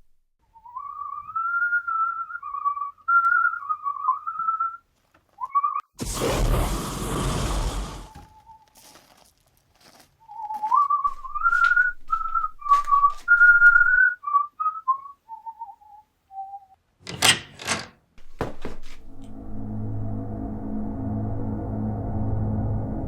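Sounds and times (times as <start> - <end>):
person whistling a tune: 0.6 - 4.8, 10.3 - 16.8.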